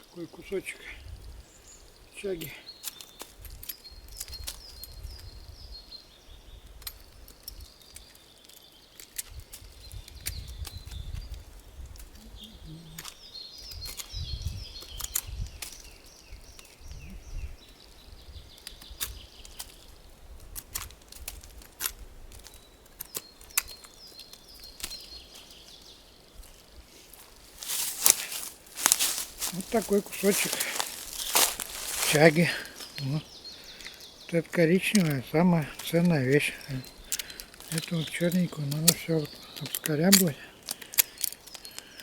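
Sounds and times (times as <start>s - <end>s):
small birds singing: 0.0s - 42.0s
handling clicks and rustling: 26.5s - 42.0s.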